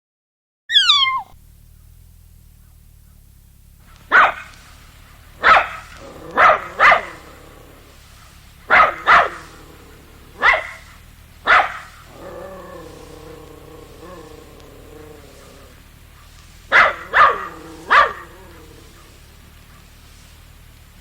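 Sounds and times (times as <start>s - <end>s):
dog barking: 3.8s - 20.5s.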